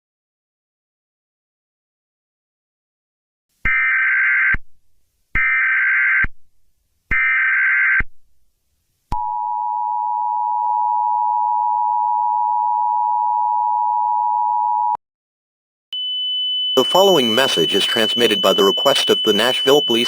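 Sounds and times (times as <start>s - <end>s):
steady two-tone attention signal: 16.0s - 20.0s
screeching digital bursts: 16.8s - 20.0s.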